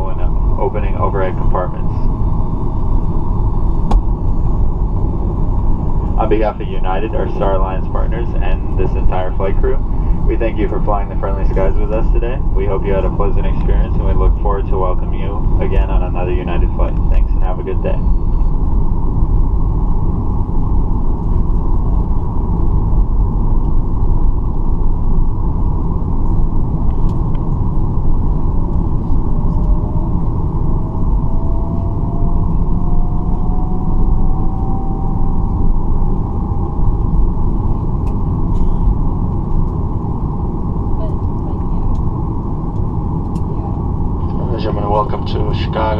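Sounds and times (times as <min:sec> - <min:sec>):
aircraft cabin engine rumble: 0:00.0 - 0:45.9
faint rising tone: 0:29.0 - 0:38.0.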